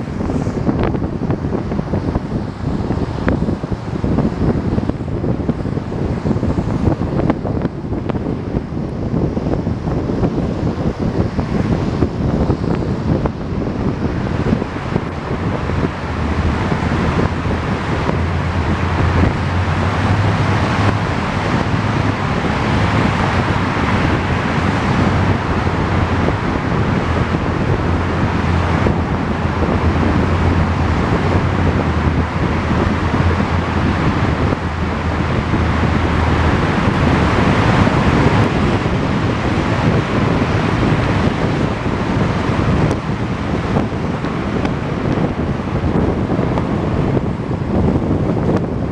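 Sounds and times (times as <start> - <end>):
vehicle engine drone: 0.0 - 48.9
wind buffeting microphone: 0.0 - 48.9.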